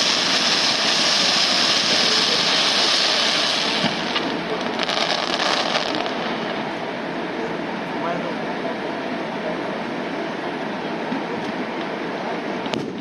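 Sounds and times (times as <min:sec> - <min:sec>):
sharp firework pops: 0:00.0 - 0:06.3, 0:12.6 - 0:13.0
fireworks crackling: 0:00.0 - 0:07.0, 0:12.6 - 0:13.0.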